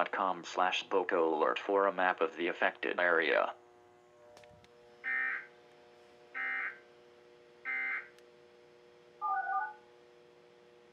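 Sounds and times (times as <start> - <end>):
faint steady hum: 0.0 - 10.9
broken electronic beep: 6.4 - 6.8, 7.7 - 8.1, 9.2 - 9.8
digital tone bursts: 6.4 - 6.8, 7.7 - 8.1, 9.2 - 9.8.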